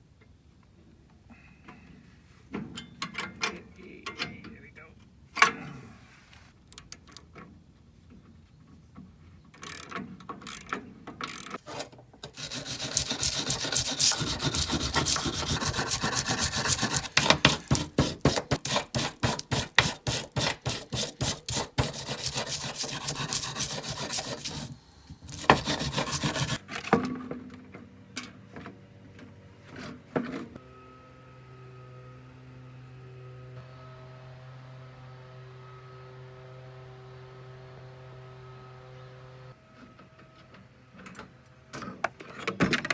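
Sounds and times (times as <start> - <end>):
file rasping strokes: 11.7 - 26.6.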